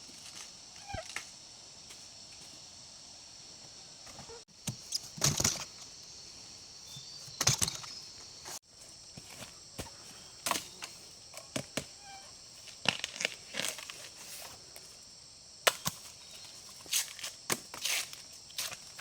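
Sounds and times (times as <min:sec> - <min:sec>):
high insect drone: 0:00.0 - 0:19.0
sharp cracks and knocks: 0:04.6 - 0:05.7, 0:07.3 - 0:08.0, 0:15.6 - 0:16.1.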